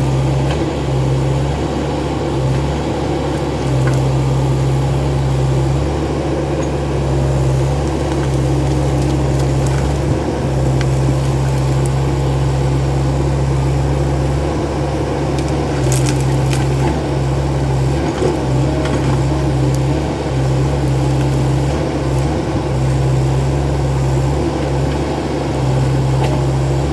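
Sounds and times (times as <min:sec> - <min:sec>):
excavator engine drone: 0:00.0 - 0:26.9.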